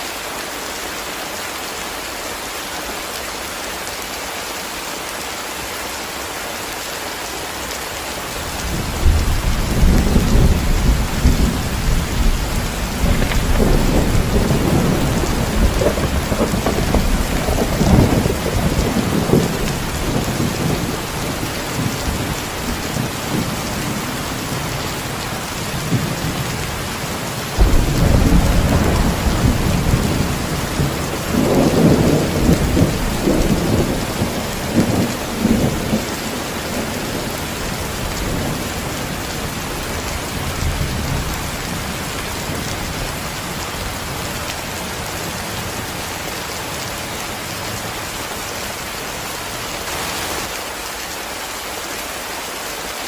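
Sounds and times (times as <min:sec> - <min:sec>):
heavy rain hissing: 0:00.0 - 0:53.0
thunder rumbling: 0:08.5 - 0:44.2.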